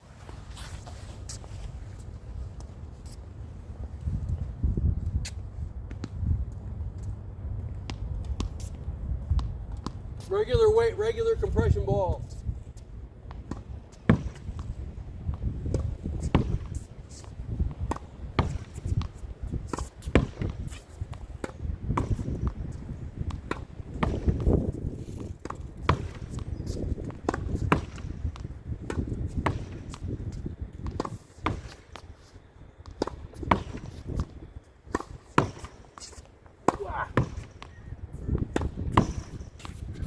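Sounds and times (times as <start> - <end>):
racket striking tennis ball: 13.3 - 14.7, 19.7 - 22.6, 23.3 - 30.2, 30.8 - 31.9, 32.9 - 34.3, 34.9 - 37.8, 38.4 - 39.9
ball hitting wall and bouncing: 35.0 - 35.8, 38.4 - 39.7.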